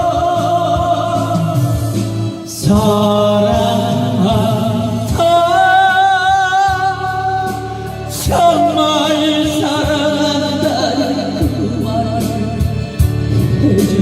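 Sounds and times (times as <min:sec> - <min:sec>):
person singing with vibrato: 0:00.0 - 0:14.0
pop song with band: 0:00.0 - 0:14.0.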